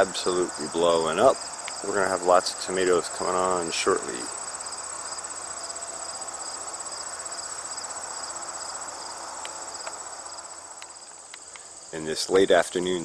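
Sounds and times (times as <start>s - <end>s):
insects trilling: 0.0s - 13.0s
faint ticks: 9.4s - 10.0s, 10.8s - 11.7s.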